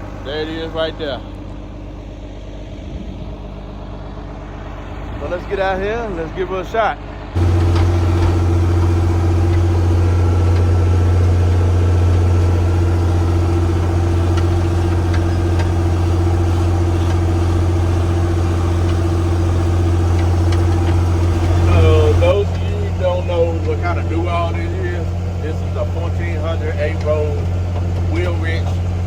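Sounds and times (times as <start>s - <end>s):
tractor diesel engine droning: 0.0s - 29.0s
faint rattles: 7.4s - 29.0s.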